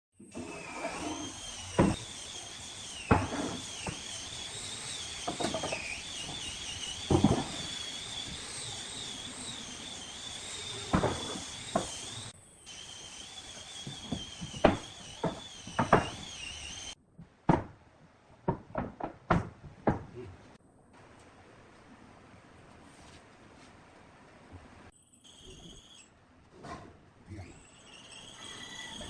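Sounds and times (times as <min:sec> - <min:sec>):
high-pitched whine: 0:00.3 - 0:17.0, 0:27.3 - 0:29.0.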